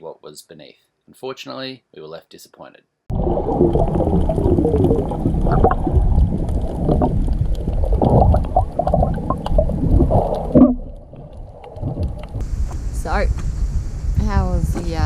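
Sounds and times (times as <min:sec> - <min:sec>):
underwater bubbling and gurgling: 0:03.1 - 0:12.5.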